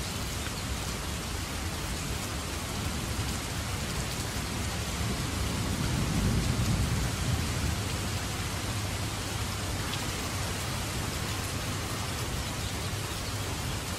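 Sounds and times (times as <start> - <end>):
steady rain hiss: 0.0 - 13.9
low rumble of thunder: 4.3 - 9.6.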